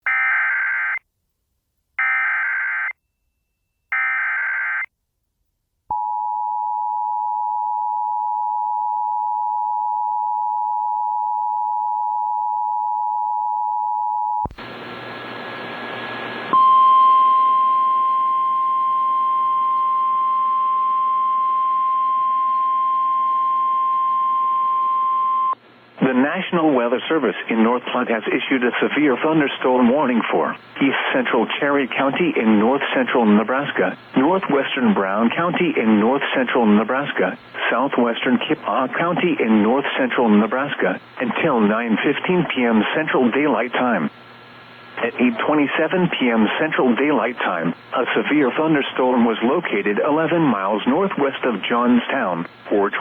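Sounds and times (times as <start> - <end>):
steady warning alarm tone: 0.1 - 1.0, 2.0 - 3.0, 3.9 - 4.9
radio hiss: 14.5 - 16.5, 25.9 - 53.0.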